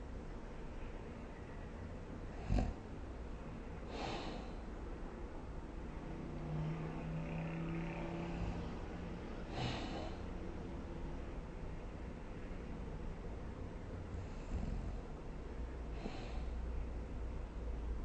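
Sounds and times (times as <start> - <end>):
person snoring: 2.4 - 2.8, 9.5 - 10.3
breathy breaths: 3.8 - 4.7, 9.4 - 10.4, 15.9 - 16.7.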